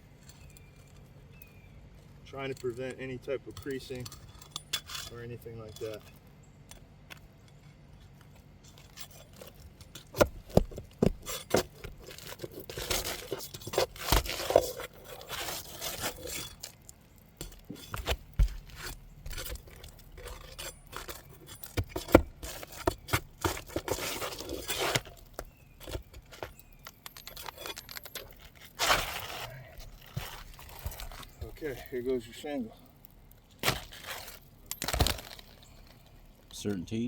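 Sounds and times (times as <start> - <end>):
shingle scraping and tearing: 0.0 - 36.8
pry tool knocking under shingles: 9.4 - 16.6, 17.4 - 29.1.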